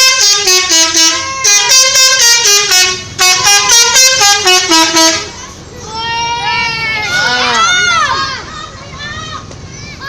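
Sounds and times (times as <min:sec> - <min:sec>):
multi-tone bus horn tune: 0:00.0 - 0:05.4.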